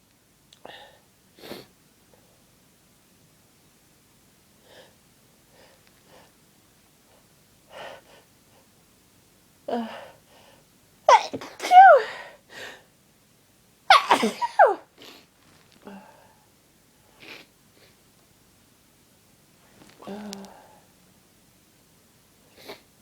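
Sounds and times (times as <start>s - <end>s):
person sneezing loudly: 11.1s - 12.1s, 13.9s - 14.9s.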